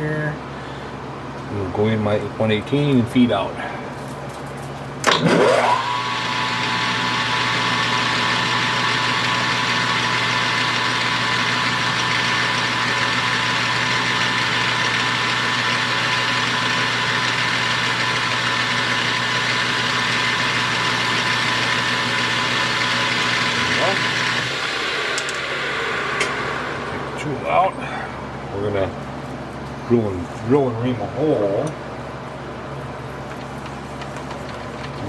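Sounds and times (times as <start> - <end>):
metal lathe spindle whining: 5.1 - 27.5.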